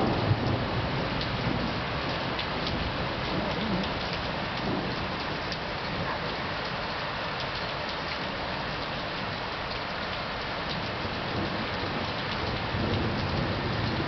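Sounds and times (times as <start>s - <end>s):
low thunder rumble: 0.0s - 6.4s, 11.0s - 14.0s
heavy rain pouring: 0.0s - 14.0s.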